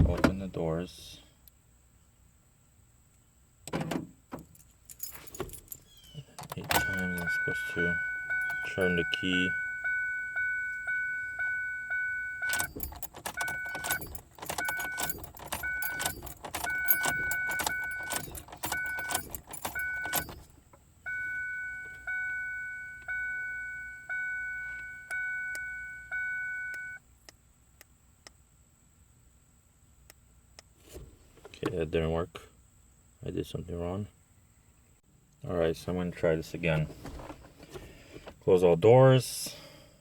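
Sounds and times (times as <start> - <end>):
keys jangling: 4.4 - 8.9, 12.4 - 20.5
car warning chime: 6.5 - 20.5, 21.1 - 27.0
lock cylinder clicking: 12.4 - 20.5.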